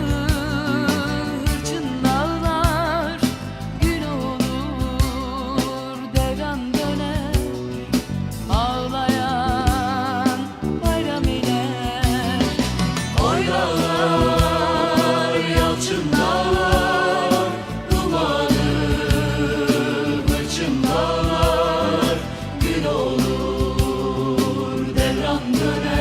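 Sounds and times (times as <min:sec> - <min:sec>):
bass line and beat: 0:06.2 - 0:26.0.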